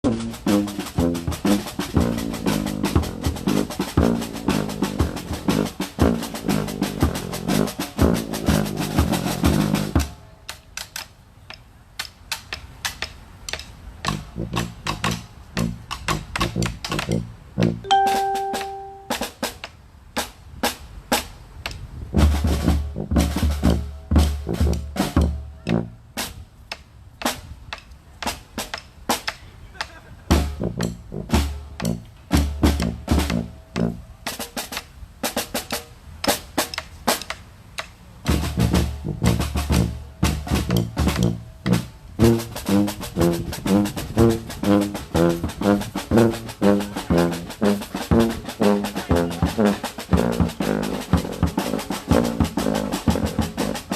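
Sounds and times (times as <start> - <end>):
snare drum pattern: 0.1 - 10.1, 12.5 - 19.3, 22.2 - 25.9, 28.2 - 37.4, 38.3 - 53.9
pitched instruments playing riff: 17.8 - 19.3
bass drum: 30.3 - 34.0.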